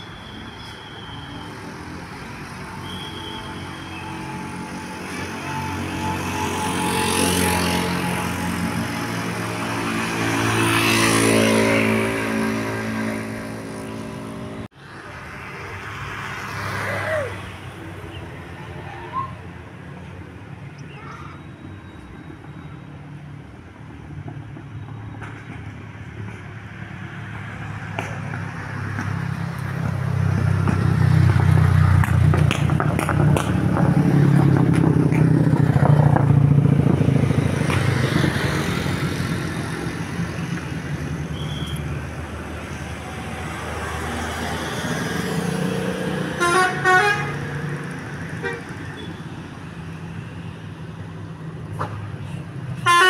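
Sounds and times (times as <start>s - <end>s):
musical bus horn: 46.3s - 47.4s, 48.4s - 48.7s, 52.8s - 53.0s.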